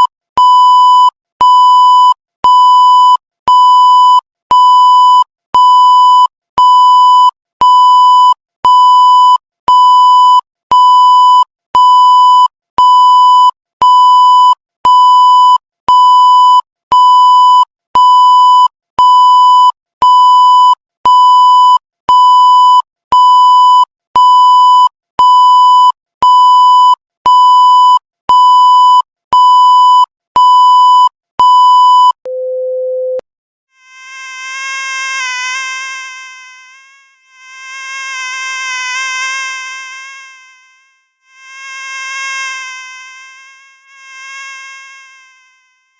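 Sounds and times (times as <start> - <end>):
lower electronic tone: 33.8 - 45.9.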